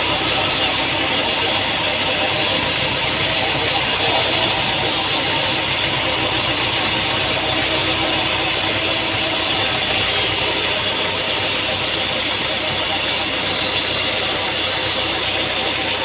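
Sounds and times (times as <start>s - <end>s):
sawmill machinery drone: 0.0s - 16.0s.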